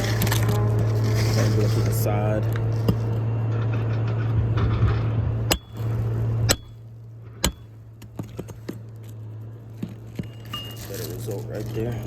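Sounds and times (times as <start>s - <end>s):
steady low hum: 0.0s - 12.0s
hammer striking metal: 5.5s - 6.8s, 7.4s - 7.7s.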